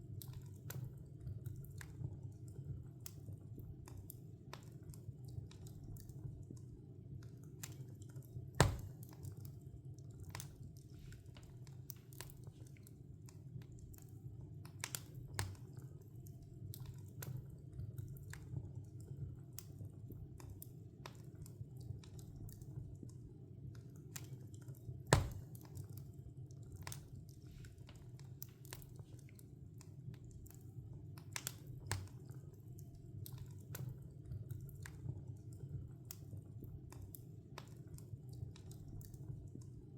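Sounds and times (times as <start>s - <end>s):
fire crackling with small snaps: 0.0s - 39.9s
low rumble of flames: 0.0s - 39.9s
loud pops from fire: 8.6s - 9.2s, 25.1s - 25.7s.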